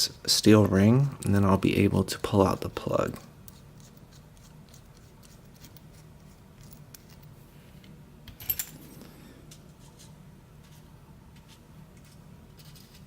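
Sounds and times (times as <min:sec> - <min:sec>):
small metal clicks and scrapes: 0:02.2 - 0:07.3, 0:12.0 - 0:13.0.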